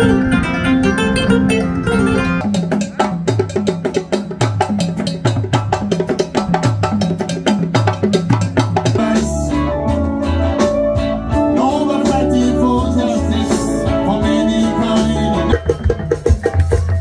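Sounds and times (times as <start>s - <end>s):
bass line: 0.0s - 2.4s, 9.0s - 17.0s
held melodic notes: 0.0s - 2.4s, 9.0s - 17.0s
percussion beat: 1.1s - 17.0s.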